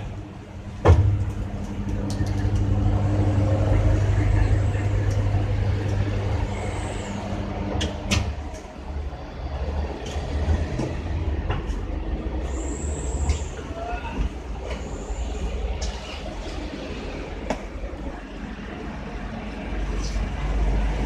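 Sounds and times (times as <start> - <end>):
low motor hum: 0.0 - 12.5.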